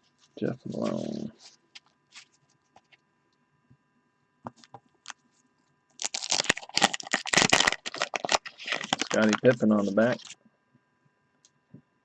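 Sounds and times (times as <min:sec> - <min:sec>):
wax paper wrapper tearing: 0:06.0 - 0:10.4.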